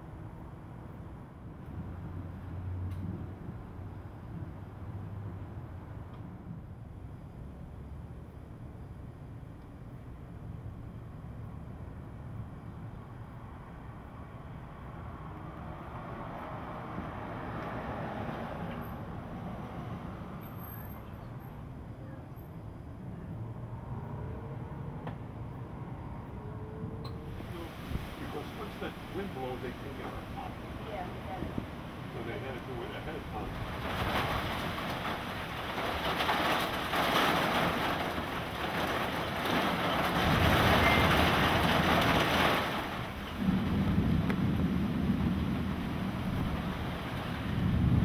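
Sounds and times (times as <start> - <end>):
rain: 0.0 - 48.0
wind: 0.0 - 48.0
wind buffeting microphone: 26.8 - 48.0
heavy rain: 27.1 - 48.0
strong wind rushing: 27.2 - 29.2, 40.2 - 48.0.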